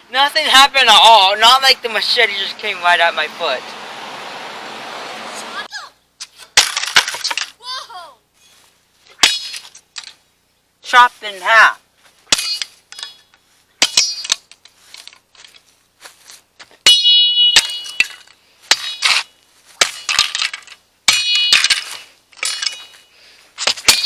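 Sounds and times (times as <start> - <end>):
metal tool blows with metallic ring: 16.8 - 18.1.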